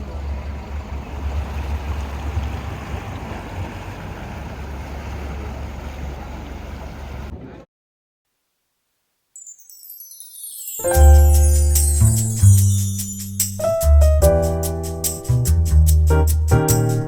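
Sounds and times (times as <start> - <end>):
boat engine rumbling: 0.0 - 7.3
rushing water: 0.1 - 6.4.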